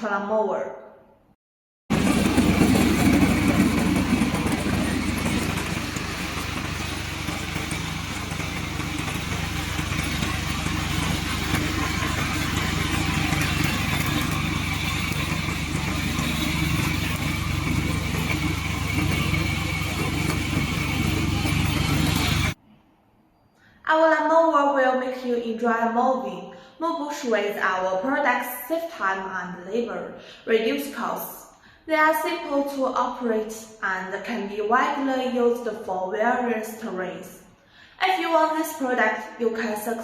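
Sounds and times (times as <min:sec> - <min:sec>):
lawn mower engine running: 0:01.9 - 0:22.6.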